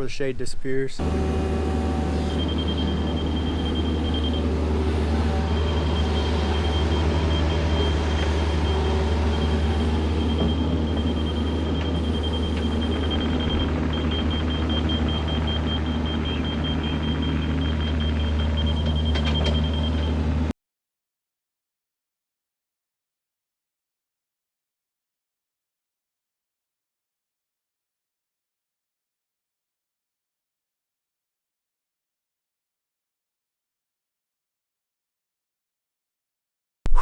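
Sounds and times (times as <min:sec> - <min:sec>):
excavator diesel engine: 0:01.0 - 0:20.5
rapid high-pitched beeping: 0:02.2 - 0:19.9.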